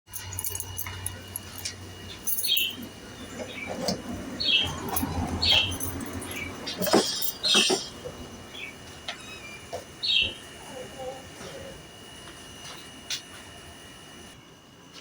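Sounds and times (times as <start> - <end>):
bird chirping: 2.4 - 4.8.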